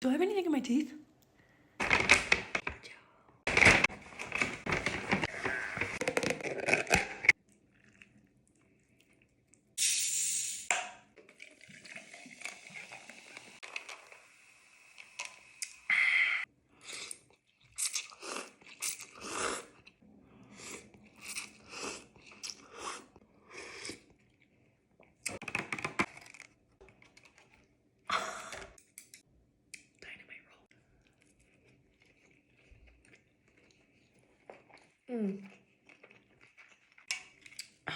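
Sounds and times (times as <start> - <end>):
person chewing and crunching food: 4.6 - 9.8, 16.8 - 25.4, 30.7 - 37.9.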